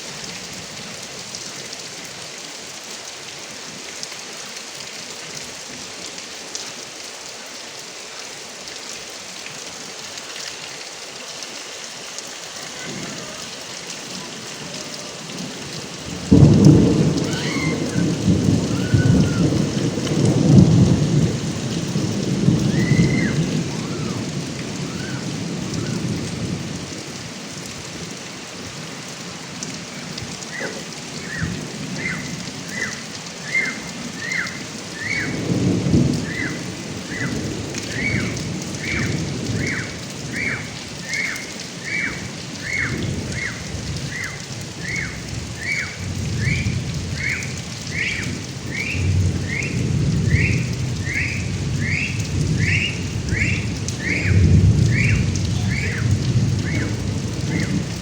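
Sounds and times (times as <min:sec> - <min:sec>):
heavy rain on gutter spout: 0:00.0 - 0:58.0
thunder rumbling: 0:12.5 - 0:27.3, 0:29.9 - 0:58.0.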